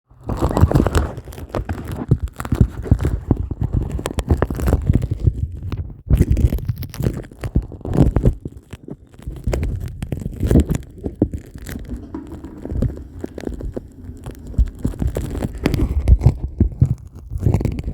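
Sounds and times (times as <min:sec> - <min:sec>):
underwater toilet flush gurgling: 0:10.7 - 0:17.0.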